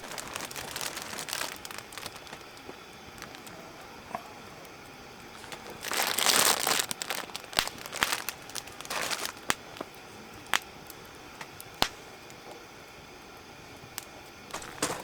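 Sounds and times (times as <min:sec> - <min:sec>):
packaging crinkling and rustling: 0:00.0 - 0:03.6, 0:05.3 - 0:09.9, 0:14.5 - 0:15.0
sharp snaps: 0:06.9 - 0:10.8, 0:11.4 - 0:12.1.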